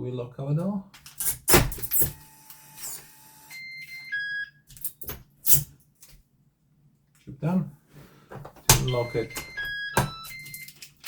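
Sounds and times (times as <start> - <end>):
electronic lock chime beeps: 2.8 - 4.5, 8.7 - 10.7
door lock clicks and knocks: 8.6 - 10.4.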